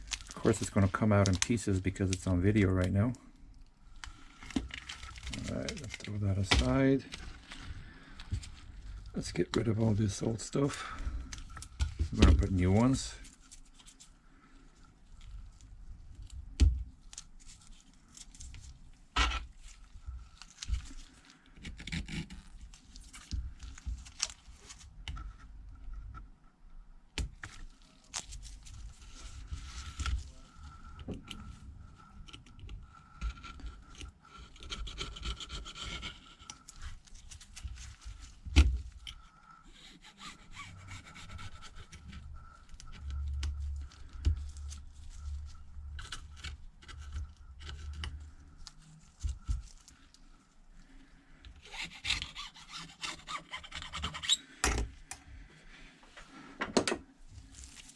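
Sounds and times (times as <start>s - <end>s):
tool scraping adhesive: 30.9s - 37.0s, 39.6s - 48.2s, 51.6s - 54.4s.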